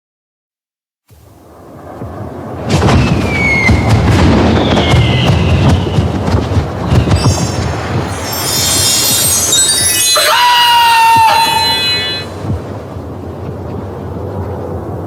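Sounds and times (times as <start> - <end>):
whistling pitch slides: 7.1 - 12.4
high tinkling tones: 7.2 - 12.4.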